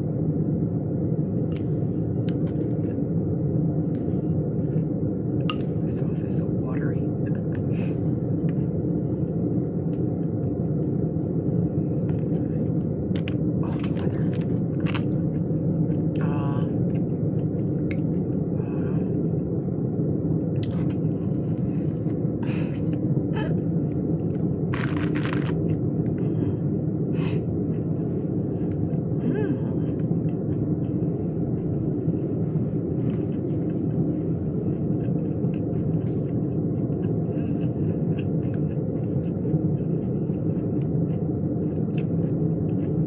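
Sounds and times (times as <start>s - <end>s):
low rumble: 0.0s - 43.0s
chewing and crunching food: 1.4s - 3.1s, 7.3s - 19.6s, 20.4s - 23.2s, 23.8s - 26.7s, 27.4s - 43.0s
crisp clicks: 24.3s - 25.7s.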